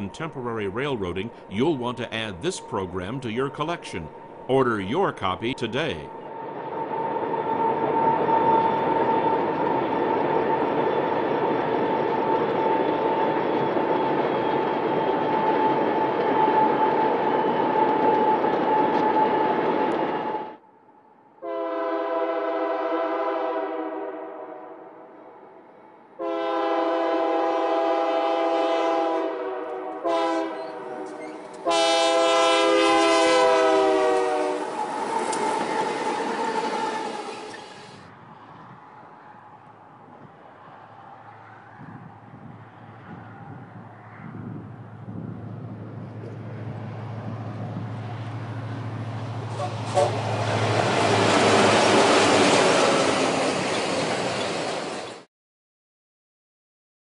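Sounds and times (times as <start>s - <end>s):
freight train rumbling on rails: 0.0s - 20.6s, 26.2s - 55.3s
locomotive air horn blasts: 21.4s - 24.7s, 26.2s - 35.4s, 49.5s - 50.4s.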